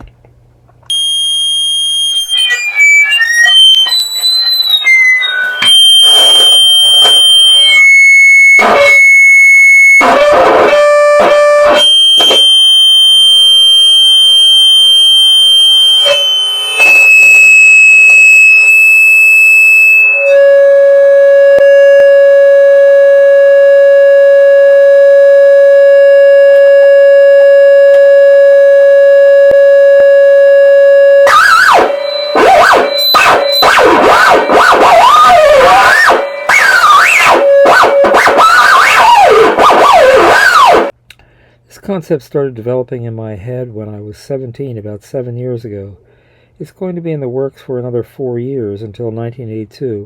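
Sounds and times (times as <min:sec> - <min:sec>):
high electronic beeps: 0:00.9 - 0:09.2, 0:29.6 - 0:40.9
long low electronic tone: 0:00.9 - 0:40.9
warbling electronic tones: 0:26.2 - 0:40.9.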